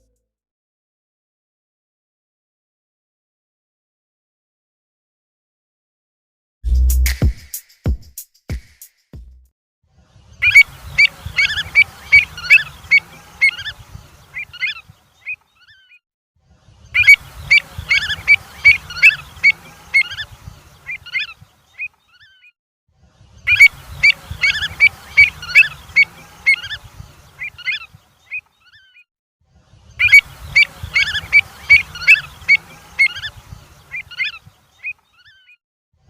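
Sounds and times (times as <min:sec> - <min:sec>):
high piping bird calls: 0:10.3 - 0:16.0, 0:16.7 - 0:22.5, 0:23.2 - 0:29.0, 0:29.8 - 0:35.6.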